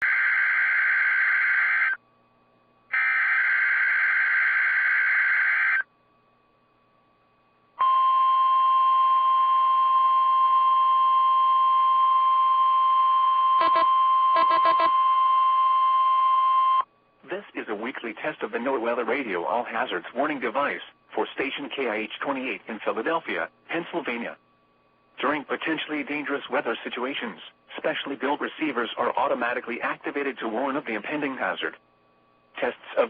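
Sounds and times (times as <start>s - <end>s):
steady warning alarm tone: 0.0s - 2.0s, 2.9s - 5.8s, 7.8s - 16.8s
buzzing data bursts: 13.6s - 14.9s.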